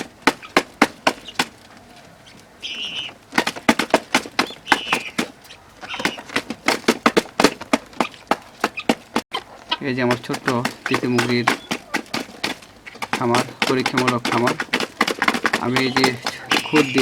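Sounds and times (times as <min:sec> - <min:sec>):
birds pecking hard surface: 0:00.0 - 0:17.0
guinea fowl calls: 0:00.4 - 0:03.2, 0:04.4 - 0:06.4, 0:08.0 - 0:14.5, 0:15.3 - 0:17.0.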